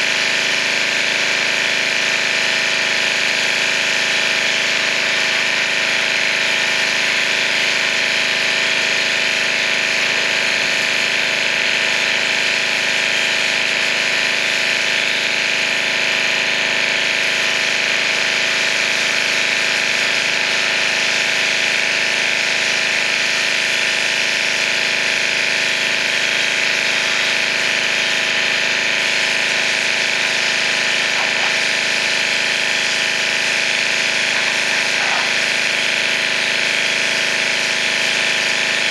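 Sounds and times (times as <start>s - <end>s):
pressure washer motor drone: 0.0s - 38.9s
water jet hissing: 26.3s - 38.9s.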